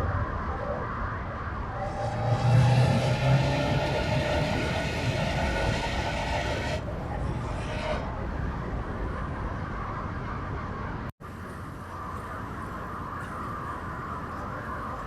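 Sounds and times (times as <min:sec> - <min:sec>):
car engine and exhaust running: 0:01.7 - 0:06.8.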